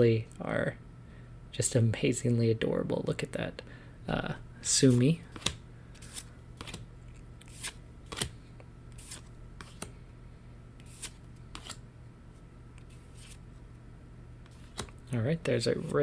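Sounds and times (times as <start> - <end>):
trading cards snapping: 5.3 - 6.8, 7.4 - 8.4, 10.8 - 11.8.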